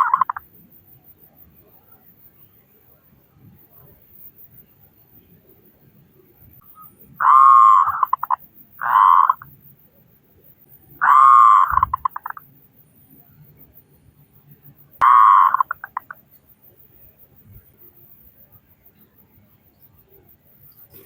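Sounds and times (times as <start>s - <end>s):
dove cooing loudly: 0.0s - 0.4s, 7.2s - 9.4s, 11.0s - 12.4s, 15.0s - 16.1s.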